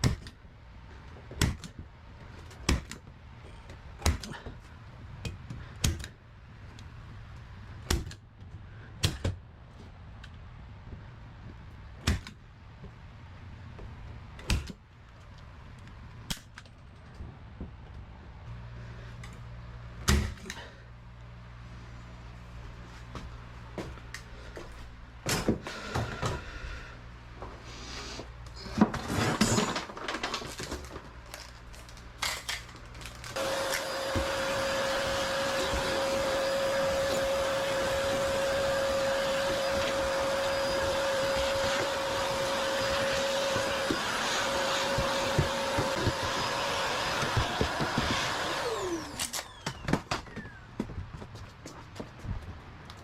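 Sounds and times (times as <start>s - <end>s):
electric motor humming: 33.4s - 49.6s.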